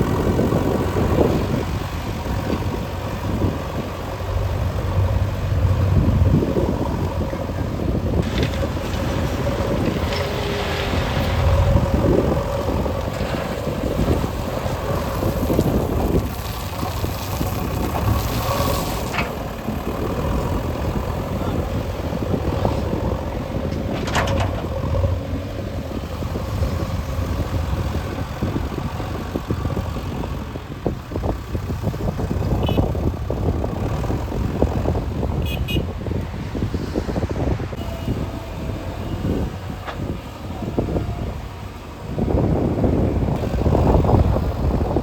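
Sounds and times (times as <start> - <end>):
diesel machinery engine rumble: 0.0 - 45.0.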